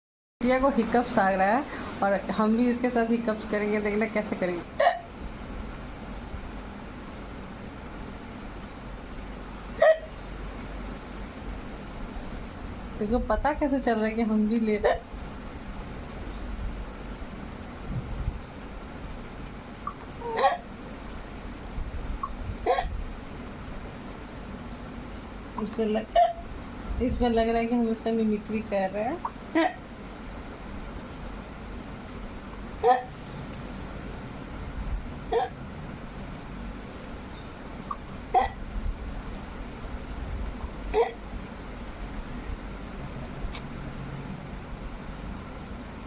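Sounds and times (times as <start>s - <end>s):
person hiccuping: 4.8s - 5.1s, 9.8s - 10.2s, 14.8s - 15.1s, 19.9s - 20.7s, 22.6s - 23.0s, 26.1s - 26.4s, 29.6s - 29.8s, 32.8s - 33.2s, 35.3s - 35.6s, 38.3s - 38.6s, 40.9s - 41.2s
baby hiccuping: 9.8s - 10.1s.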